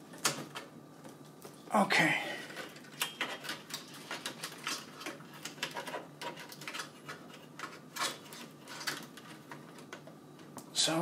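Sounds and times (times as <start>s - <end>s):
plastic connectors clicking and rustling: 2.4s - 10.7s.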